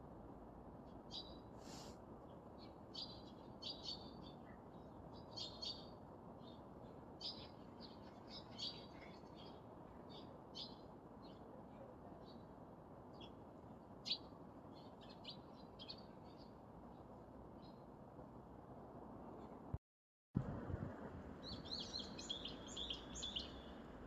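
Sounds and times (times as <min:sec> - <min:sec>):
small birds chirping: 0:00.9 - 0:13.4, 0:14.0 - 0:17.8, 0:21.4 - 0:24.0
steady low hiss: 0:20.4 - 0:24.0.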